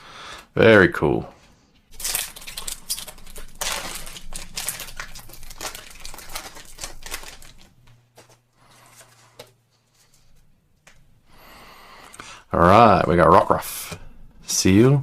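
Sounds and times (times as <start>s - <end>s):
foil wrapper crinkling and tearing: 1.9s - 9.4s.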